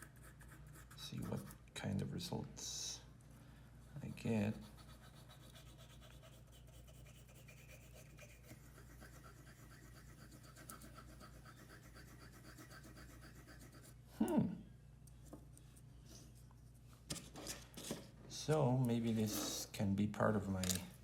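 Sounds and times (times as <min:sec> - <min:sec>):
solder wire scratching on paper: 0:04.0 - 0:14.0.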